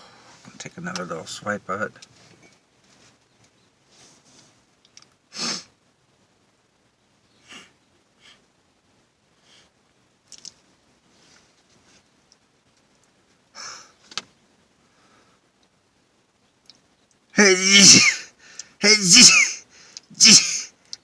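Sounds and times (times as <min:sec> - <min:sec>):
small clicks: 0:04.8 - 0:05.2, 0:10.3 - 0:10.6, 0:14.1 - 0:14.3, 0:16.6 - 0:17.2
man sniffing through nose: 0:05.3 - 0:05.7, 0:07.4 - 0:08.4, 0:17.4 - 0:20.7.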